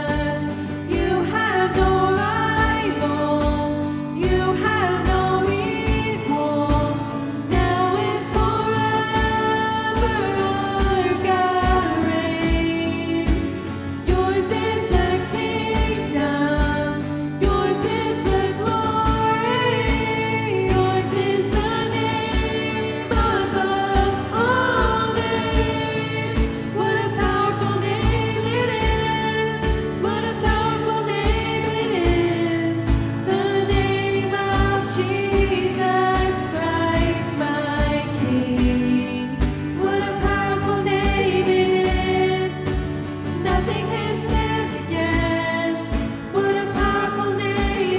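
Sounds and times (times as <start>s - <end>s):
people singing: 0.0s - 47.9s
worship band playing: 0.1s - 47.9s
kick drum beat: 11.6s - 37.2s.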